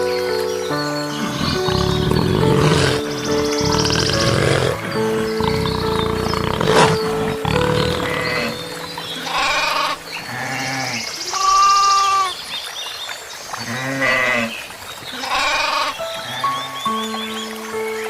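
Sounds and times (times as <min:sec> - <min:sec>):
background music: 0:00.0 - 0:11.0, 0:16.0 - 0:18.0
livestock bleating: 0:01.2 - 0:08.6, 0:09.2 - 0:11.0.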